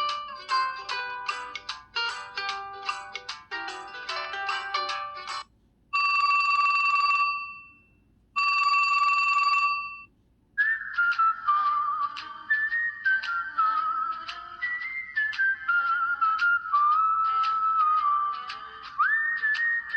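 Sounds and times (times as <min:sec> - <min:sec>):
phone ringtone tune: 0:00.0 - 0:05.4, 0:06.0 - 0:10.1
steady buzzing ring tone: 0:05.9 - 0:10.1.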